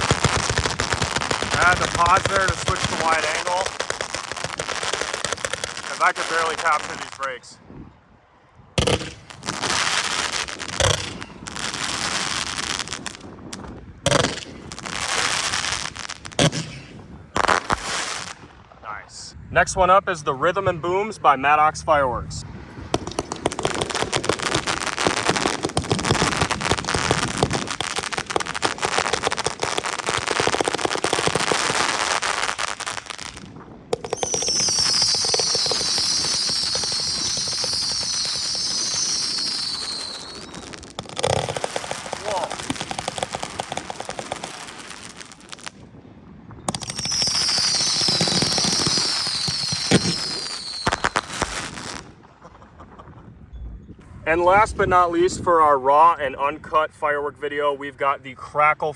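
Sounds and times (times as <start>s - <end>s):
firework popping and crackling: 0.0s - 7.4s, 8.8s - 18.8s, 22.7s - 46.0s, 46.6s - 53.0s
firework whistle sliding down: 34.1s - 40.8s, 46.8s - 51.5s.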